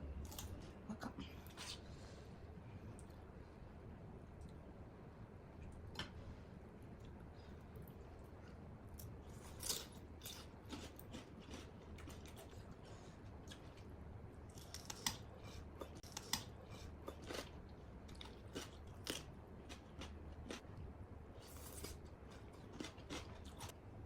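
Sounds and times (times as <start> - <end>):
crisp chewing crunches: 9.0 - 12.7, 14.5 - 20.6, 21.4 - 23.7.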